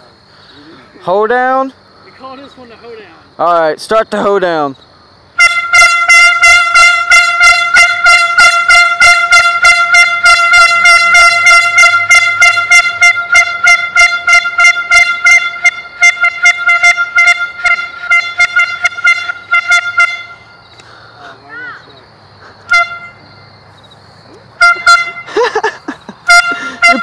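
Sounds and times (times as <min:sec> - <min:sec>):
air horn rapid short blasts: 0:05.4 - 0:20.9, 0:22.6 - 0:23.3, 0:24.6 - 0:25.5, 0:26.2 - 0:27.0.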